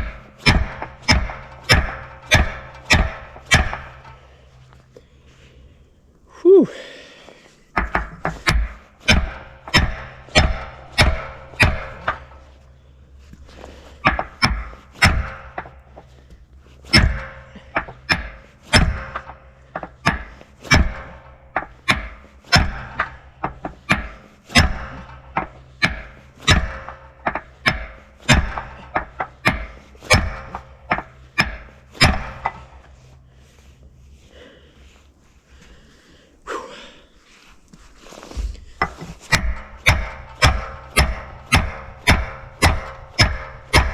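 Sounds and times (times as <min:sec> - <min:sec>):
maul striking steel: 0:00.0 - 0:04.4, 0:07.7 - 0:12.8, 0:13.6 - 0:33.0, 0:38.8 - 0:43.9.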